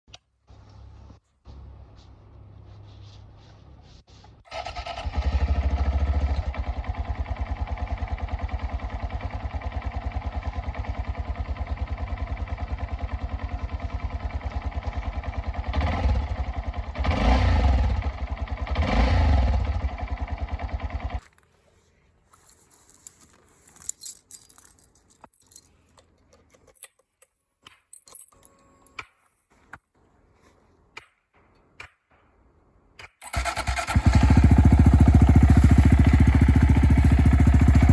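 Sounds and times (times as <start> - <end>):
motorcycle engine idling and revving: 4.5 - 21.3, 33.2 - 37.9
light clicks and rattles: 22.3 - 29.1.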